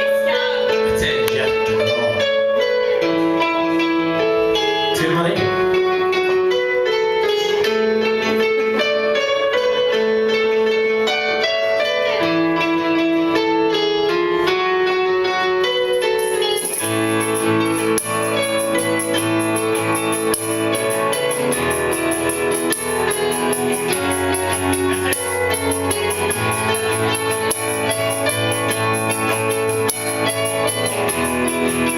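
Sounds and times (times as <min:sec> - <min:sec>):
guitar band music: 0:00.0 - 0:31.9.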